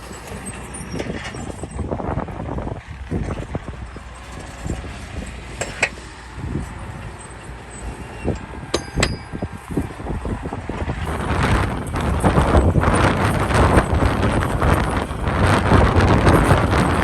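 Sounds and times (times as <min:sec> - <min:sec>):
earthmoving machinery rumbling: 0:00.0 - 0:17.0
sharp metallic clanks: 0:08.3 - 0:09.6.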